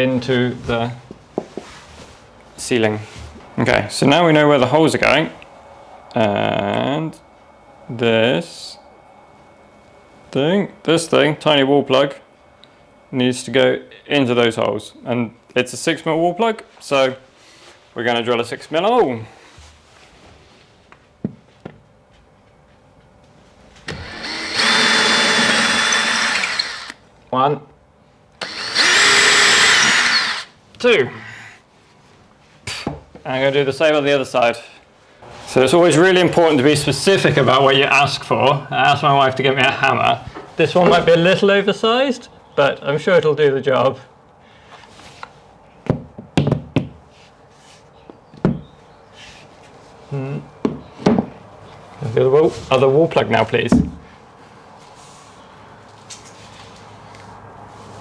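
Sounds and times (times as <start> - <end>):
electric drill spinning: 23.9 - 27.0, 28.4 - 30.5.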